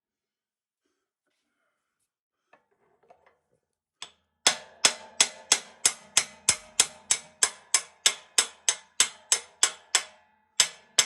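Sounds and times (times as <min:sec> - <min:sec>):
hammer striking metal bolt: 0:04.5 - 0:11.0.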